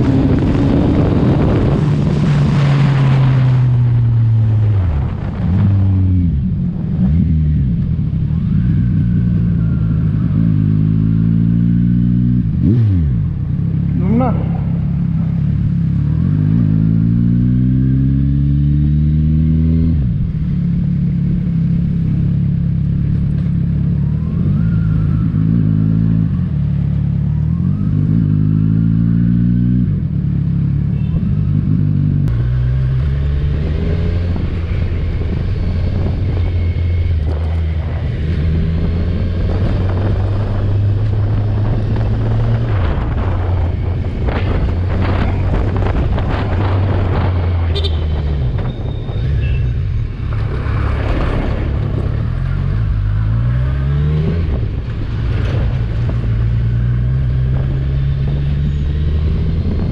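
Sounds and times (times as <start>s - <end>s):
motorcycle engine accelerating: 0.0s - 59.9s
road and wind noise: 0.0s - 59.9s.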